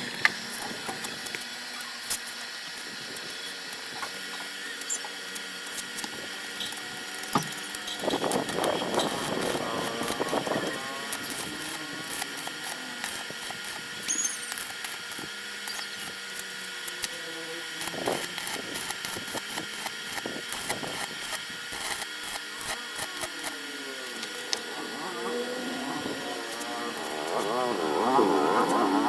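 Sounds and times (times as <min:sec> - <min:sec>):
motor whining: 0:00.0 - 0:29.0
scratchy clicks of coconut grater: 0:04.0 - 0:14.0, 0:14.7 - 0:24.7.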